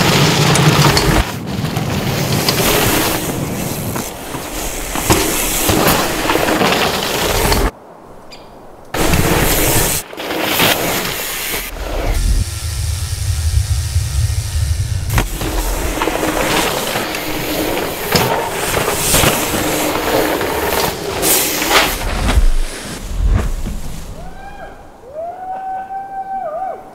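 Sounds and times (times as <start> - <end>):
bike knocks and rattles: 0.0 - 7.7, 15.1 - 22.6
tyres crunching and skidding on dirt: 0.0 - 7.8, 8.9 - 24.3
deep rumble: 11.6 - 18.0.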